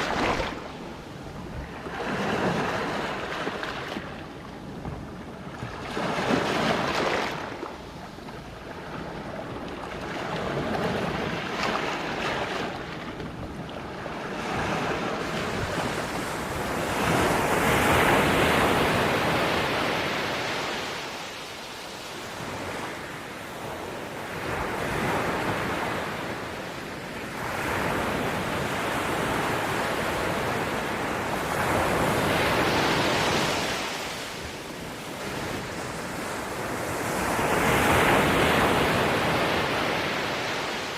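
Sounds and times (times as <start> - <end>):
sea waves breaking on rocks: 0.0 - 4.1
wind on microphone: 0.0 - 7.6, 8.6 - 21.2.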